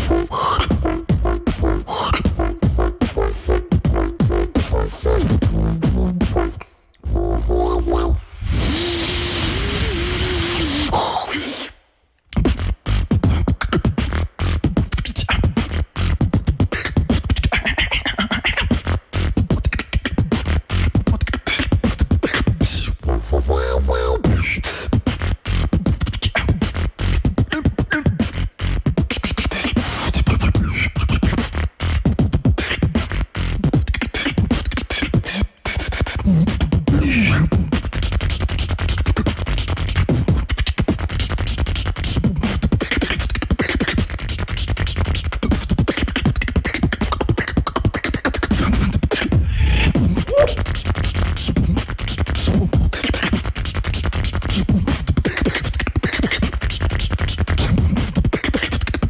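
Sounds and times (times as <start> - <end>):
heavy bass line: 0.0 - 11.0, 22.7 - 24.6, 49.4 - 51.3
short pitched vocal sounds: 0.0 - 12.7, 22.6 - 24.9, 49.3 - 50.9
beatboxing drum sounds: 0.0 - 59.0.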